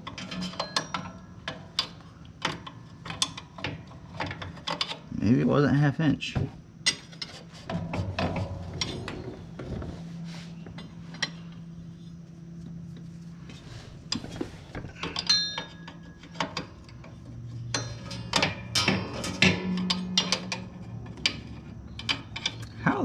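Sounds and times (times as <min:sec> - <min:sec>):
faint low hum: 0:00.0 - 0:23.0
metal hand tools clinking: 0:15.0 - 0:16.9
ringing clink: 0:15.1 - 0:16.3.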